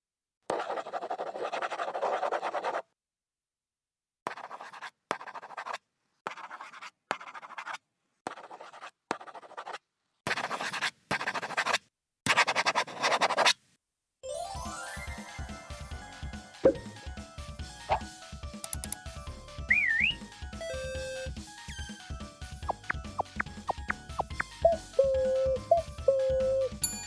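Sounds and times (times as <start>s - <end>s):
pen scratching on paper: 0.5s - 2.9s, 4.3s - 13.6s.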